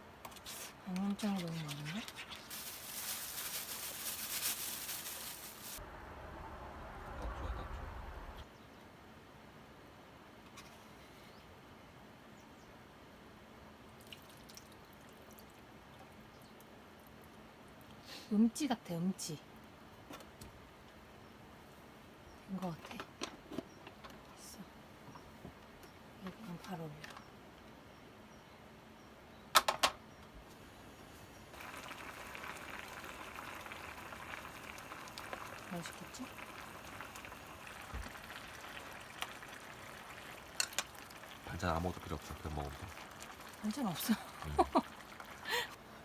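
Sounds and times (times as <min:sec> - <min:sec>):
food sizzling in a pan: 0:02.5 - 0:05.8, 0:30.8 - 0:45.7.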